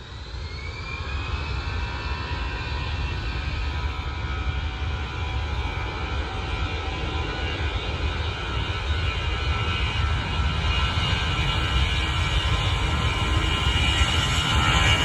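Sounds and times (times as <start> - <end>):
aircraft engines whining: 0.1 - 15.0.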